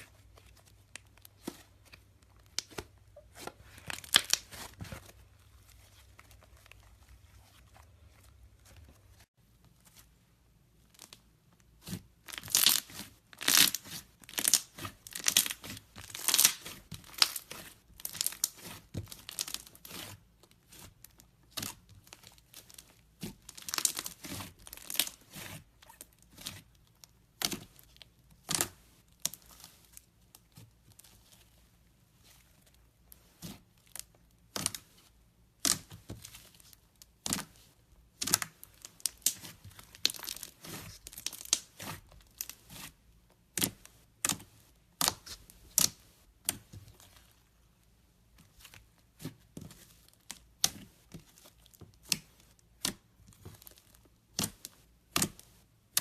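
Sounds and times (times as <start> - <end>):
slime crackling and popping: 3.6 - 4.9, 11.8 - 26.7, 35.6 - 42.9.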